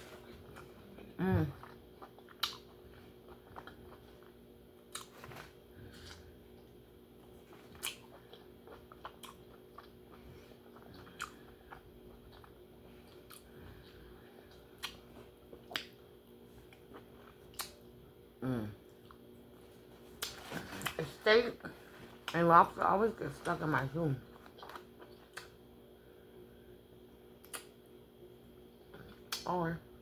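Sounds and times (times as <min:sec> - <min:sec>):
quiet chewing: 0:00.0 - 0:17.8, 0:24.2 - 0:25.6.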